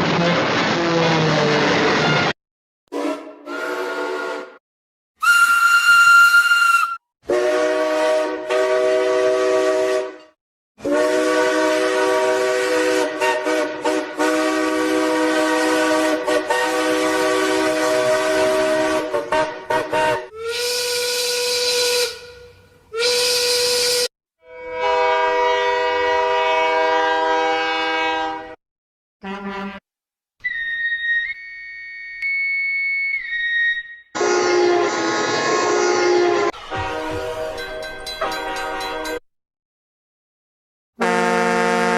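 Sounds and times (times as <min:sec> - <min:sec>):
single-note train whistles: 0:02.9 - 0:04.6, 0:05.2 - 0:28.6, 0:30.4 - 0:39.0, 0:41.0 - 0:41.9
train horn blasts: 0:02.9 - 0:04.6, 0:06.4 - 0:28.6, 0:34.2 - 0:38.4, 0:41.0 - 0:41.9.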